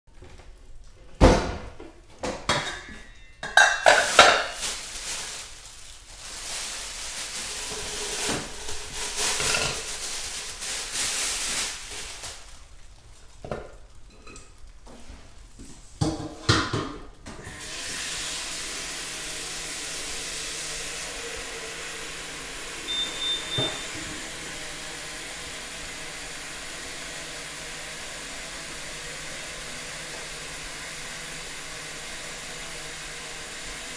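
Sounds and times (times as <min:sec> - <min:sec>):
steady hiss with low hum: 0:00.2 - 0:17.5
kitchenware clattering: 0:02.2 - 0:04.9, 0:07.5 - 0:10.5, 0:16.0 - 0:17.1
brief high beep: 0:22.9 - 0:23.9.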